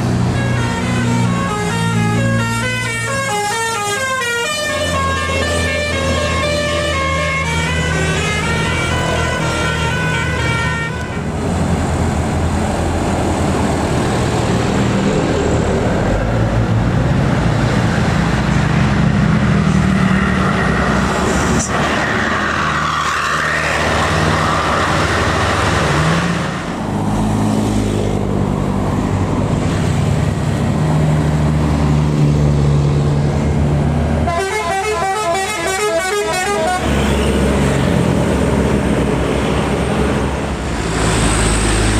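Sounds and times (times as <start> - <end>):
bus diesel engine pulling: 0.0 - 41.9
road noise: 0.0 - 41.9
musical air horn melody: 0.4 - 11.3, 34.2 - 37.2.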